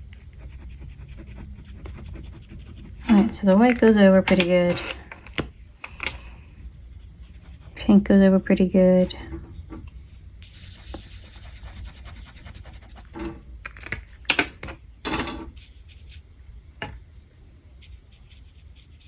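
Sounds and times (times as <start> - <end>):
drawing tool scratching on paper: 0.0 - 5.7, 6.6 - 7.9, 10.4 - 13.2, 17.8 - 19.0
rubbing sounds: 0.0 - 5.9, 6.6 - 13.3.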